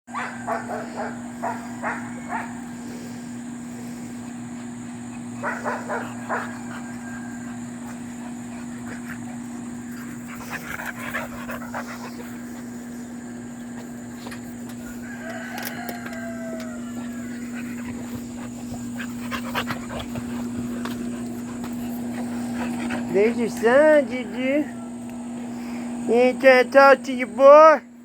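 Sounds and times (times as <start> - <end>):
dog barking: 0.1 - 2.7, 5.4 - 6.9
steady low hum: 0.1 - 28.0.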